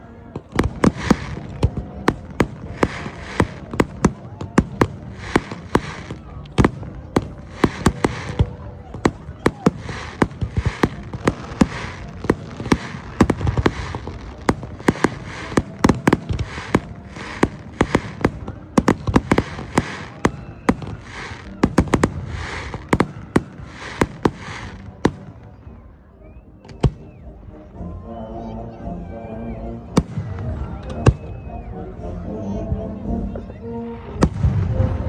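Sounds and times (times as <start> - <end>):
fireworks bangs: 0.4 - 25.4
fireworks crackling: 0.4 - 25.4.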